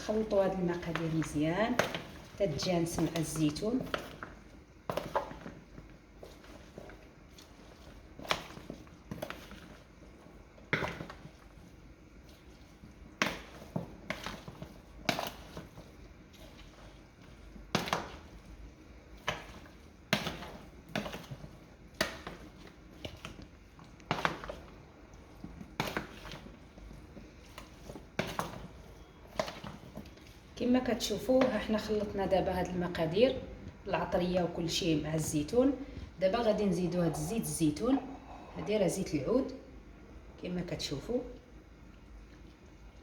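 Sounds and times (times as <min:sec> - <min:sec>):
wet knocks and squelches: 0:00.0 - 0:32.3.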